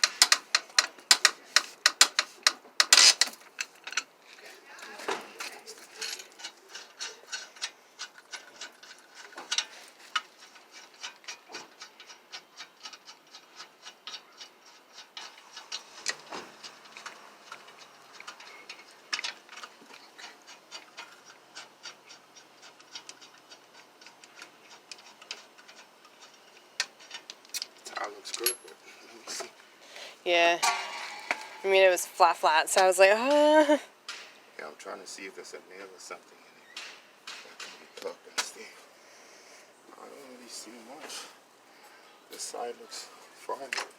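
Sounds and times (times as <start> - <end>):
hand ratchet clicking: 0.0 - 4.0.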